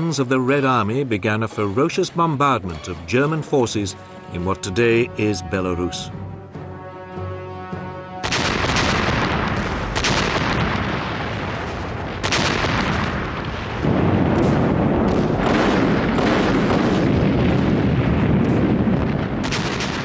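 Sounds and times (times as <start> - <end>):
heavy guns firing: 8.2 - 20.0.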